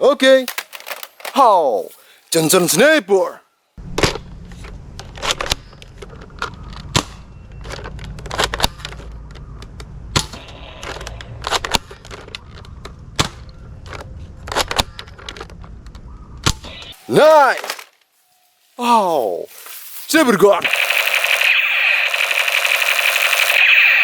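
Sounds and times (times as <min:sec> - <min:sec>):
toy guns firing: 0:20.6 - 0:24.0.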